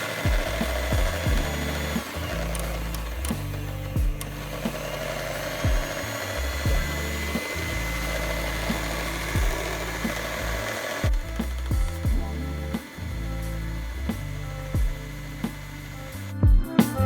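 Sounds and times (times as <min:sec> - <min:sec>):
electric hand mixer running: 0:00.0 - 0:16.6
background music with bass: 0:00.0 - 0:17.0
kick drum thuds: 0:00.3 - 0:01.5, 0:04.0 - 0:04.2, 0:05.6 - 0:06.0, 0:06.7 - 0:06.9, 0:09.4 - 0:09.6, 0:11.1 - 0:12.3, 0:14.8 - 0:15.0, 0:16.4 - 0:16.7.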